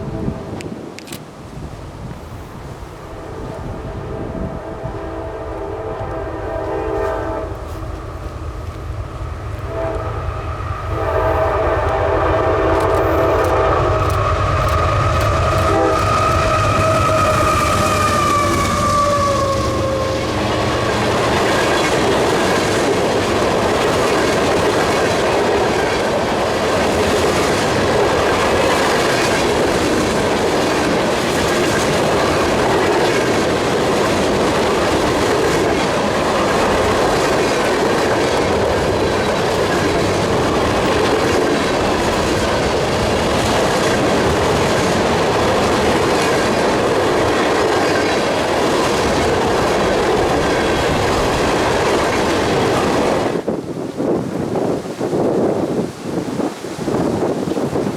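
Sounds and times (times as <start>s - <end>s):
freight train rumbling past: 0.0s - 57.9s
steel wheels clattering on rails: 12.7s - 53.5s.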